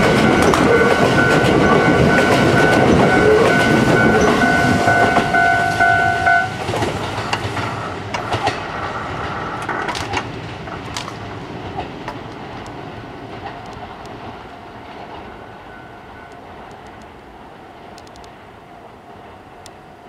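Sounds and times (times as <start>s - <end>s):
train wheels clacking over rail joints: 0.0s - 15.4s
electric train passing: 0.0s - 20.0s.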